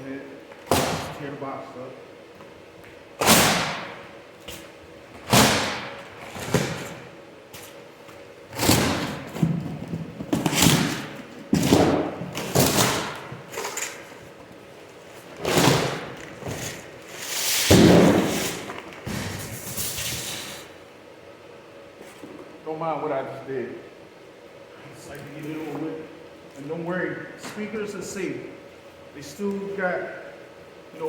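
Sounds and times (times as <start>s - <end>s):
cardboard boxes thudding: 8.6s - 13.5s, 17.7s - 19.6s.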